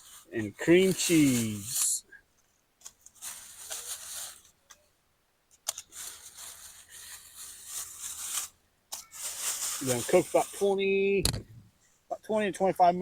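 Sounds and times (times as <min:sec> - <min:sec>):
food sizzling on coals: 0:06.0 - 0:10.7.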